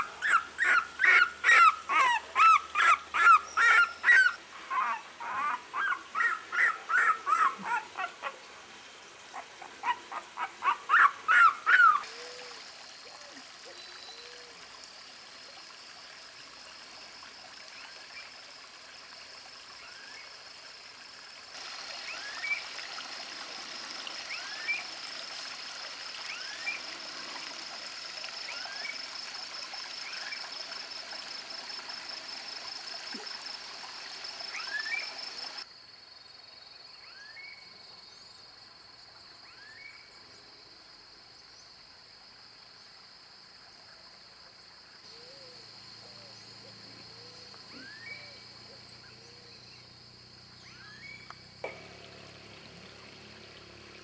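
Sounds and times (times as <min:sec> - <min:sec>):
dog yelping: 0:00.0 - 0:08.4, 0:09.4 - 0:12.2
faint trickling water: 0:00.0 - 0:35.7, 0:50.0 - 0:54.0.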